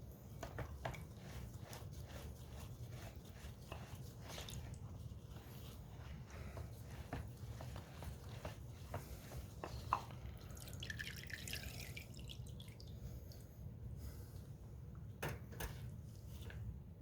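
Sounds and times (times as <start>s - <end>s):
liquid dripping and trickling: 9.6s - 13.5s.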